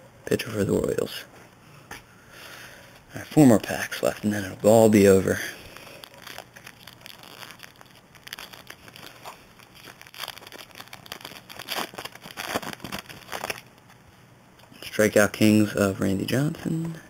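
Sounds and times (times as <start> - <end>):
foil wrapper crinkling: 3.6 - 14.0.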